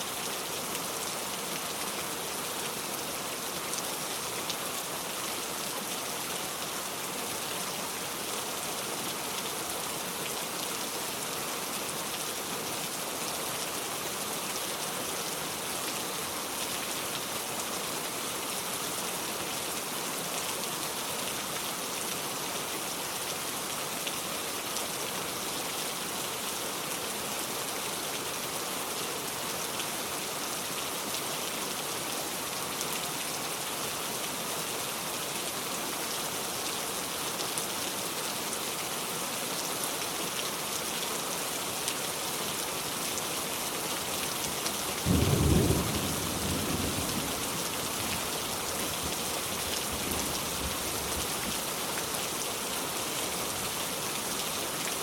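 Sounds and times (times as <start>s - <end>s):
steady rain falling: 0.0s - 55.0s.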